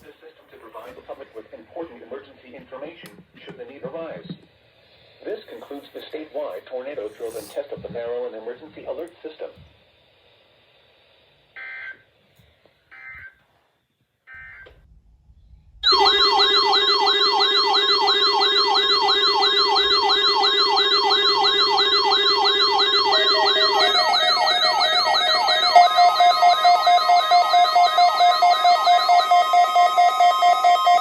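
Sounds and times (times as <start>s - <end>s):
electronic siren alarm: 11.6s - 12.0s, 12.9s - 13.4s, 14.3s - 14.8s, 15.8s - 31.0s.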